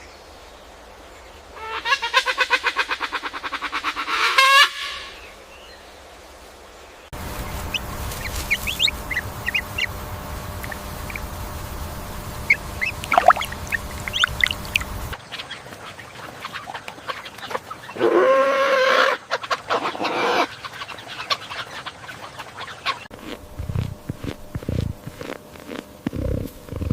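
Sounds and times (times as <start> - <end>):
quavering animal call: 7.2 - 15.2, 17.8 - 23.1.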